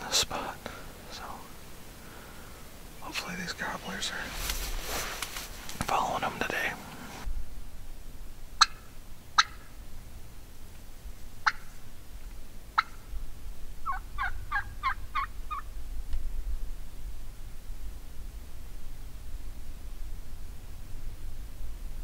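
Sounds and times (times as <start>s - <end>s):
turkey clucking: 8.6s - 8.8s, 9.4s - 9.6s, 11.4s - 11.7s, 12.8s - 13.0s, 13.8s - 15.6s
turkey yelping: 8.6s - 9.6s, 11.4s - 11.7s, 12.8s - 13.0s, 13.8s - 15.6s.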